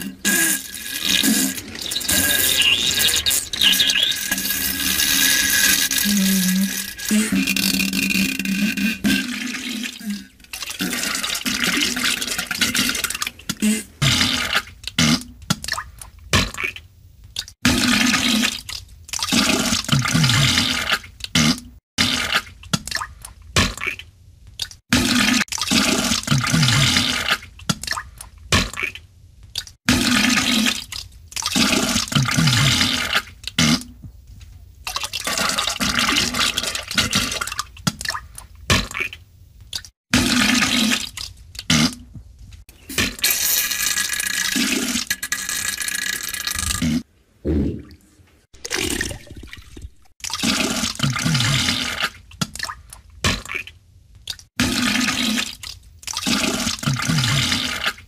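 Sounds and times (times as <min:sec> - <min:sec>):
spluttering gas and splattering liquid: 0:29.6 - 0:33.9, 0:34.9 - 0:42.0, 0:42.8 - 0:47.1, 0:48.6 - 0:53.6, 0:54.3 - 0:58.0.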